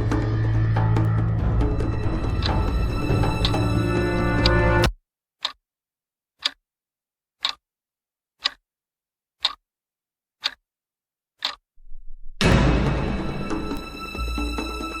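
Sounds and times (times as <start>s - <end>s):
background music: 0.0s - 4.9s, 12.4s - 15.0s
clock-like ticking: 1.0s - 5.6s, 6.4s - 6.6s, 7.4s - 7.6s, 8.4s - 8.6s, 9.4s - 9.6s, 10.4s - 10.6s, 11.4s - 12.6s.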